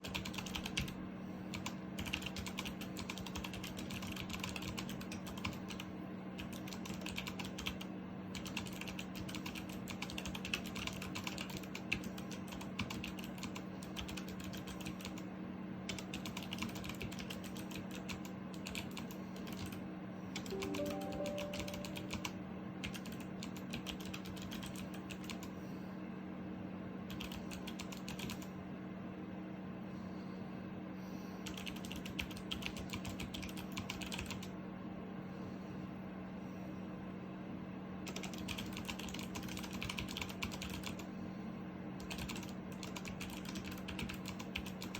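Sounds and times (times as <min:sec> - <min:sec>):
mechanical keyboard clicking: 0:00.0 - 0:00.9, 0:01.5 - 0:07.8, 0:08.4 - 0:15.2, 0:15.9 - 0:19.8, 0:20.4 - 0:25.5, 0:27.1 - 0:28.5, 0:31.4 - 0:34.5, 0:38.1 - 0:41.0, 0:42.0 - 0:44.9.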